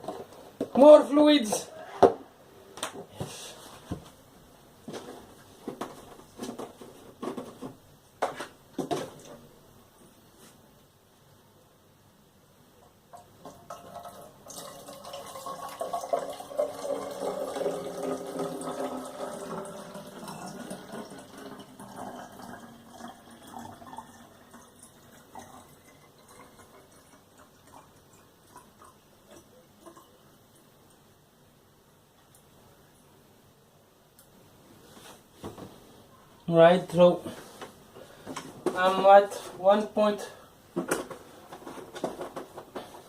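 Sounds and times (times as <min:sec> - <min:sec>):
water pouring into reservoir: 0:13.5 - 0:30.2.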